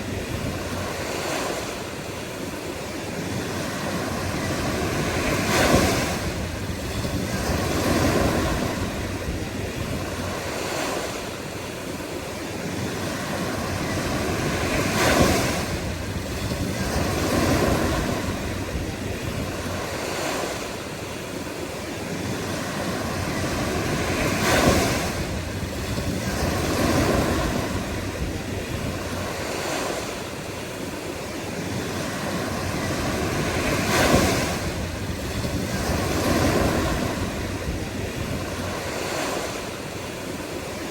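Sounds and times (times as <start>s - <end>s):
ocean waves breaking: 0.0s - 40.9s.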